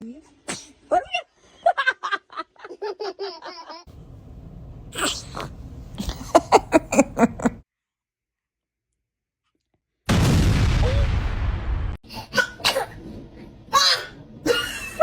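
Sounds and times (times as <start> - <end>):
baby sneezing: 0.5 - 0.8, 5.0 - 6.2.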